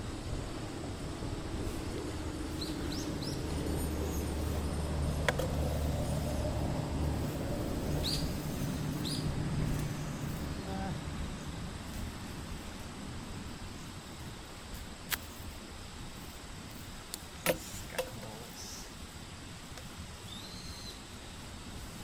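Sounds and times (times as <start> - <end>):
outdoor background noise: 0.0 - 22.0
faint bird chirp: 7.6 - 11.0, 20.2 - 21.5.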